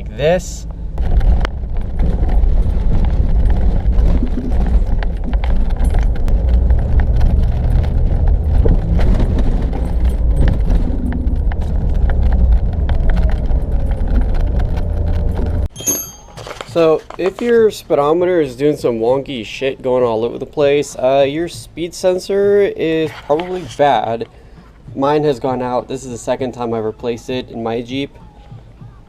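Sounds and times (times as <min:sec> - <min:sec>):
road and engine rumble: 0:00.0 - 0:15.7
small knocks and rattles: 0:01.0 - 0:15.7.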